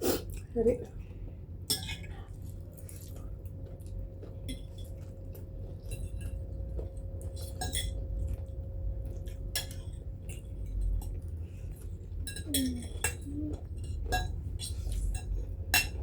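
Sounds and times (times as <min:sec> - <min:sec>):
steady low hum: 0:00.0 - 0:16.0
cutlery clinking on plates: 0:13.8 - 0:16.0.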